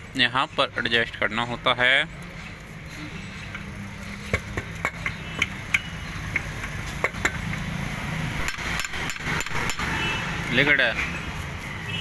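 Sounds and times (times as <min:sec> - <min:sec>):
metal clicks and taps of tools: 0:04.3 - 0:07.7.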